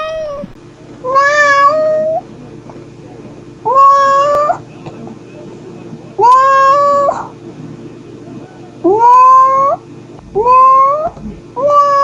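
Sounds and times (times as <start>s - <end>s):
cat meowing: 0.0s - 2.2s, 3.7s - 4.6s, 6.2s - 7.3s, 8.9s - 9.8s, 10.4s - 12.0s.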